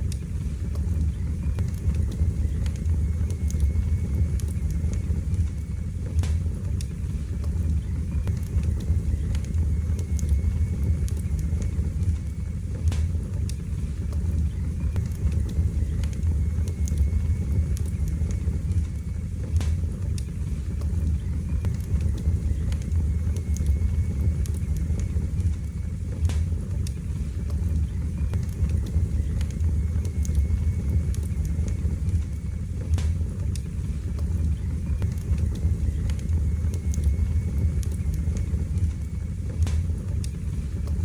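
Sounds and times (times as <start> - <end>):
fire crackling and popping: 0.0 - 41.0
low rumble of flames: 0.0 - 41.0.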